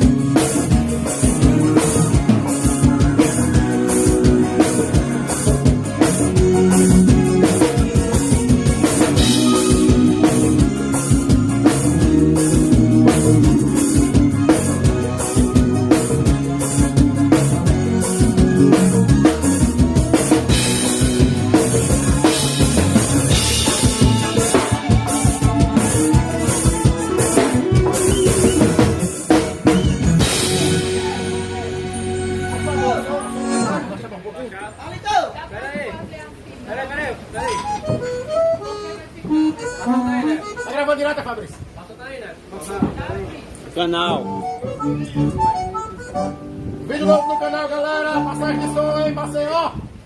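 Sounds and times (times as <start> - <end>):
drum kit beat: 0.0 - 33.7
band playing instrumental: 0.0 - 34.4, 37.4 - 41.8, 43.7 - 49.5.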